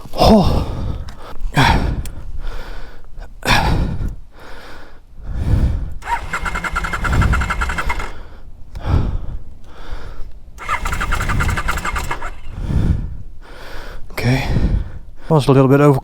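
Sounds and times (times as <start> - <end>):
heavy panting breaths: 0.2 - 15.3
electric starter cranking engine: 6.0 - 8.2, 10.6 - 12.8.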